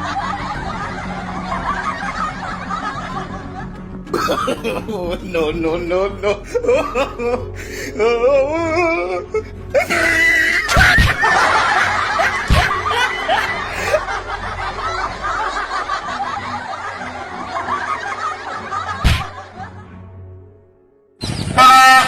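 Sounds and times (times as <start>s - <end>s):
people laughing together: 0.0s - 20.1s
sharp thumps: 12.3s - 13.0s, 19.0s - 19.4s.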